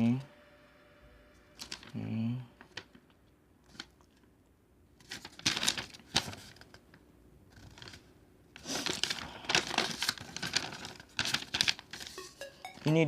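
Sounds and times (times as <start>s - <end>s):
packaging rustling and crinkling: 5.0s - 6.9s, 7.5s - 12.2s.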